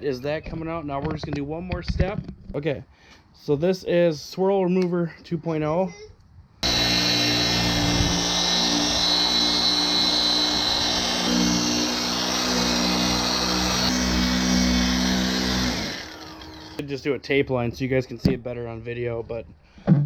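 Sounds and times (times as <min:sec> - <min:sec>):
electric polisher whining: 0:06.6 - 0:16.8.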